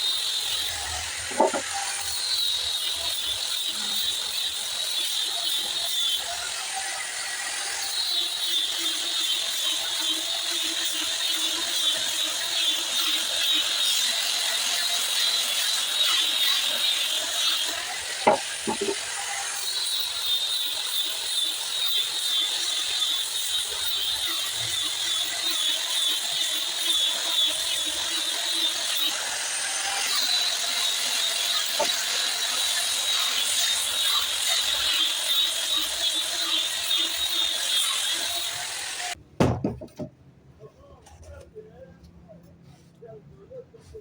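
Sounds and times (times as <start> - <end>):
woodworking tool running: 0.6 - 4.3, 13.0 - 19.6, 23.6 - 39.2.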